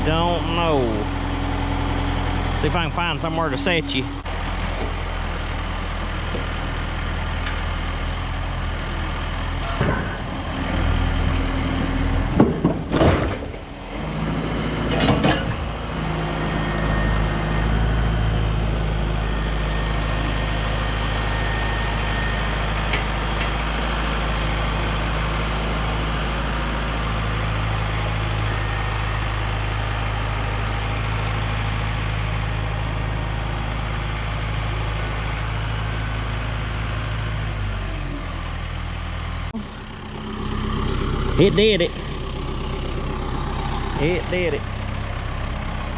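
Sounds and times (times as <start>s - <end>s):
diesel engine running: 0.0s - 45.9s
loud clunks and bangs: 9.6s - 10.4s, 12.3s - 13.7s, 14.8s - 15.7s.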